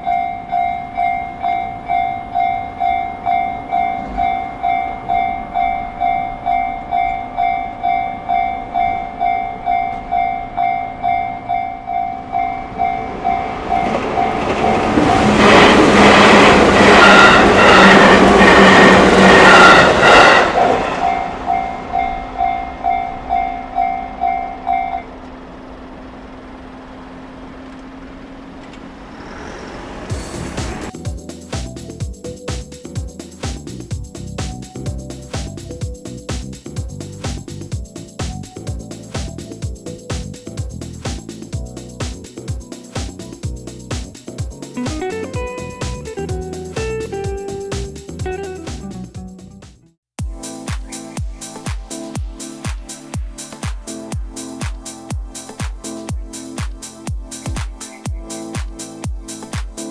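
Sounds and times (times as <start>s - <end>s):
level-crossing alarm bell: 0.0s - 25.3s
train wheels clattering: 12.4s - 23.8s, 28.6s - 45.1s.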